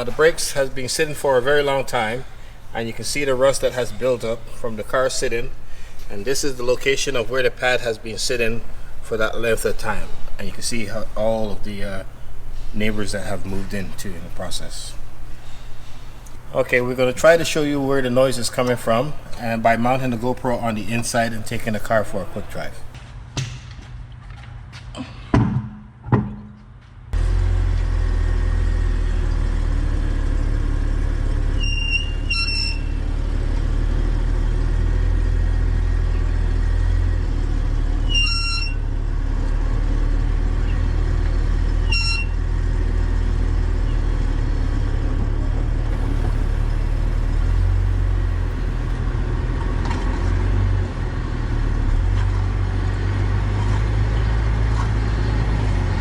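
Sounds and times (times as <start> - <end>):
car road rumble: 0.0 - 23.0, 38.8 - 56.0
high brake squeals: 7.6 - 22.9, 31.5 - 33.2, 38.0 - 39.0, 41.7 - 42.7, 45.9 - 48.9.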